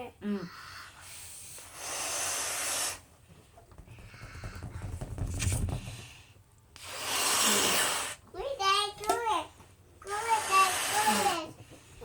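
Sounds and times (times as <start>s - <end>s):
breath puffing into balloon: 0.9s - 3.2s, 3.9s - 8.2s, 10.3s - 12.0s
balloon rubbing and crackling: 1.7s - 3.1s, 3.9s - 8.2s, 10.1s - 11.7s.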